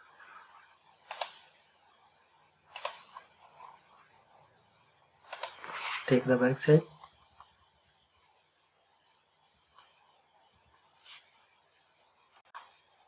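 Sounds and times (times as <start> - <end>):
sharp computer clicks: 1.1 - 1.5, 2.7 - 3.1, 5.3 - 5.6.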